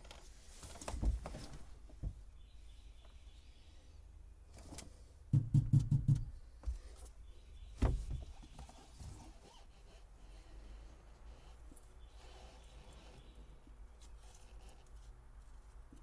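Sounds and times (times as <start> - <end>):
knocks and clunks of wiring handled: 0.0 - 2.2, 7.7 - 8.7.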